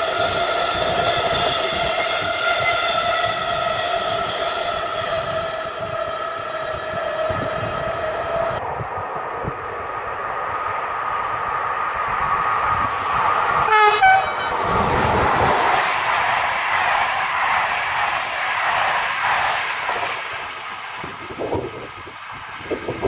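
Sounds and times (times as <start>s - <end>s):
rush of train wheels: 0.0s - 23.0s
two-note train horn: 13.6s - 14.8s.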